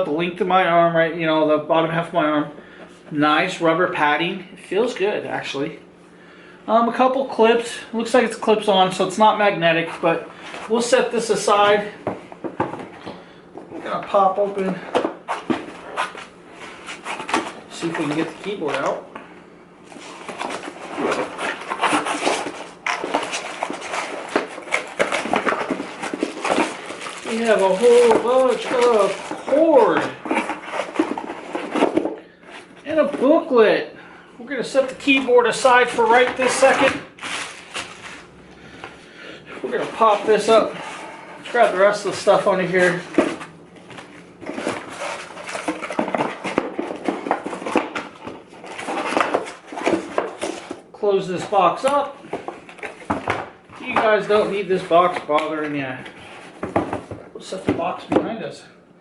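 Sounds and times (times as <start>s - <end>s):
packaging rustling and scraping: 10.3s - 19.0s, 19.8s - 33.6s, 34.6s - 38.4s, 39.6s - 58.2s.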